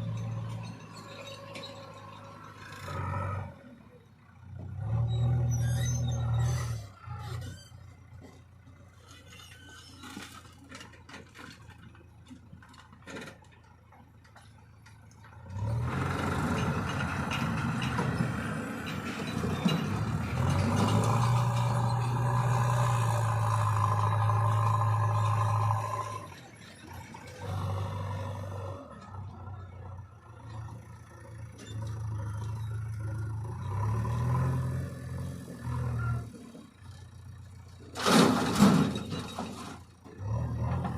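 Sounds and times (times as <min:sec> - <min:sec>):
diesel engine revving: 0:00.0 - 0:08.2, 0:15.4 - 0:40.9.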